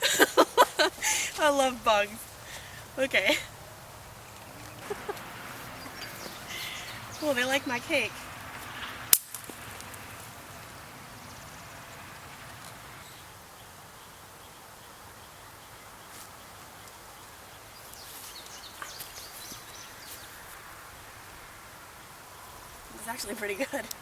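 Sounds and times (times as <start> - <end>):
faint steady hiss: 0.0 - 24.0.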